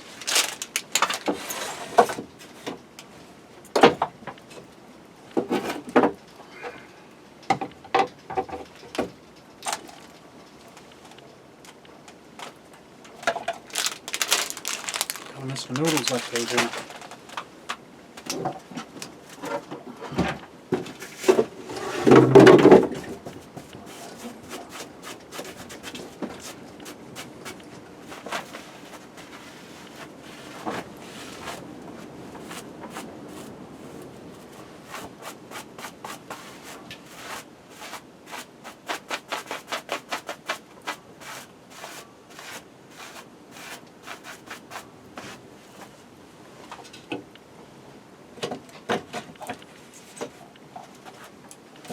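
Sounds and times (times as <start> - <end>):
objects rubbing and scraping: 0.0 - 2.2, 13.6 - 17.4, 27.2 - 46.0.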